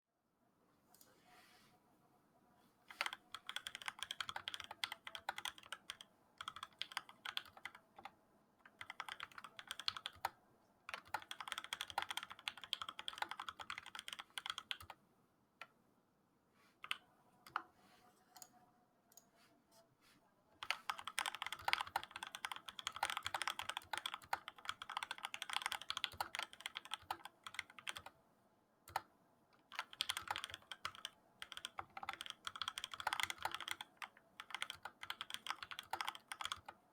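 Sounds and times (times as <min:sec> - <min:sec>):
typing on mechanical keyboard: 0:02.9 - 0:10.3, 0:10.9 - 0:15.0, 0:20.6 - 0:28.1, 0:28.9 - 0:36.8.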